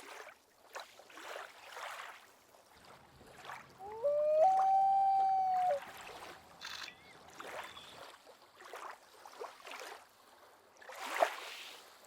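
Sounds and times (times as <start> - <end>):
water splashing and lapping: 0.0 - 12.0.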